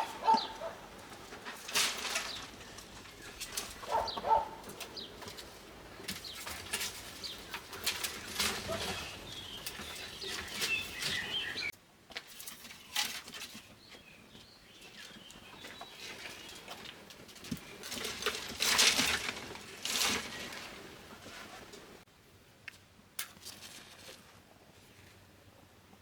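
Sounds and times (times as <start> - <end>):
small birds chirping: 0.0 - 1.0, 2.0 - 11.7, 13.6 - 16.9
rustling or flapping: 0.0 - 13.7, 15.9 - 22.0.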